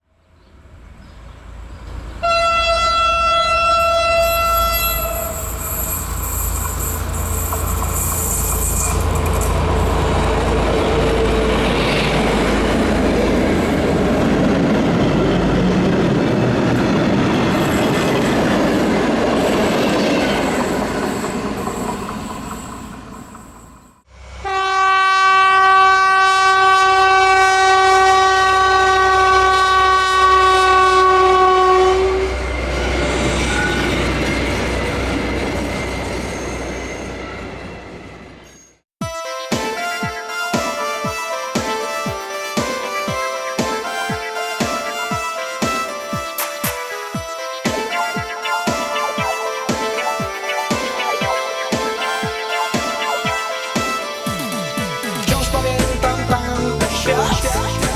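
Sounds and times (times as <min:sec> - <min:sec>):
locomotive engine rumble: 0:00.5 - 0:23.3
locomotive horn: 0:02.2 - 0:22.2, 0:24.2 - 0:36.0, 0:39.0 - 0:57.9
train wheel clatter: 0:03.8 - 0:24.0.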